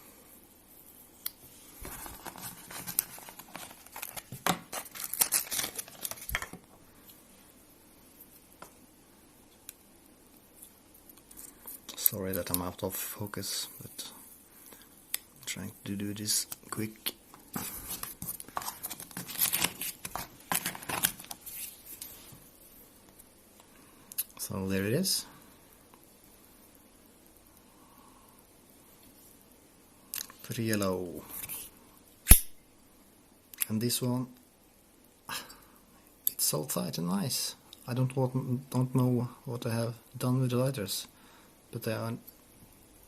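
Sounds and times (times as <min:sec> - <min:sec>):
wrapping crinkling and rustling: 0:01.6 - 0:06.7, 0:15.5 - 0:22.4.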